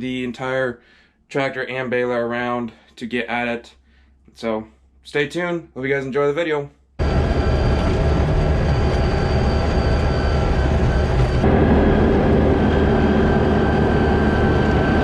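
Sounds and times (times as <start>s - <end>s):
farm vehicle engine running: 7.0s - 15.0s.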